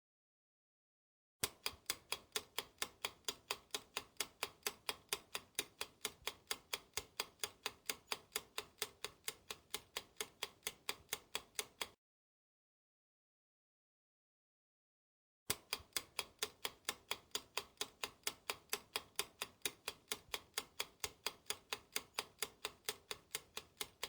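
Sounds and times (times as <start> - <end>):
fast clock ticking: 1.4 - 12.0, 15.5 - 24.0.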